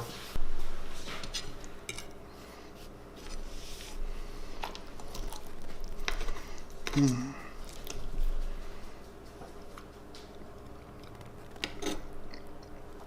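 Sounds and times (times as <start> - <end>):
person chewing food: 3.9 - 13.0.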